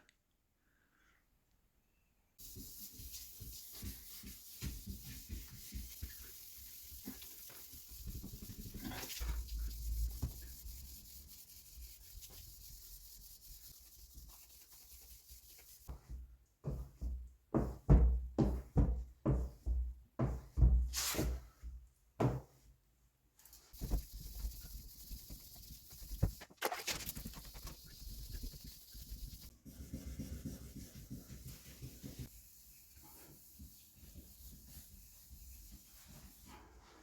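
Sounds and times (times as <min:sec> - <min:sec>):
abrasive paper rubbing wet surface: 0:02.4 - 0:15.9, 0:23.8 - 0:36.6.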